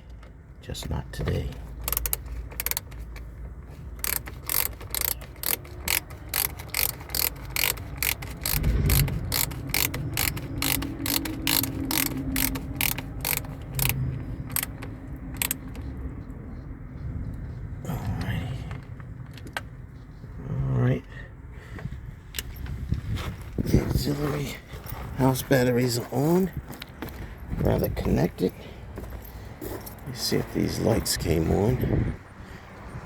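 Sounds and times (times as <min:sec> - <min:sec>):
ratchet wrench clicking: 0:01.6 - 0:15.9.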